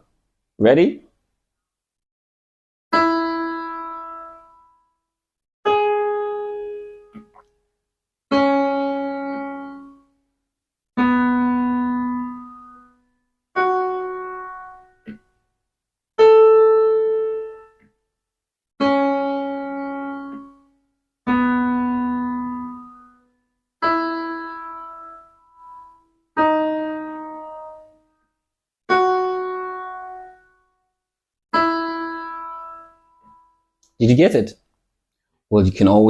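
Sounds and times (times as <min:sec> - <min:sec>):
piano notes played singly: 0:02.9 - 0:04.9, 0:05.7 - 0:07.4, 0:08.3 - 0:10.2, 0:11.0 - 0:15.3, 0:16.2 - 0:17.8, 0:18.8 - 0:28.2, 0:28.9 - 0:30.8, 0:31.5 - 0:33.7.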